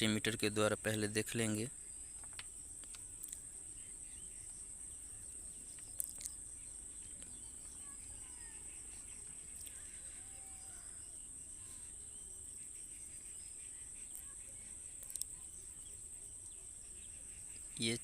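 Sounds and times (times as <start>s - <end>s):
crickets chirring: 0.0s - 18.0s
faint clicks: 2.2s - 3.5s, 5.6s - 6.4s, 9.2s - 9.9s, 15.0s - 15.4s.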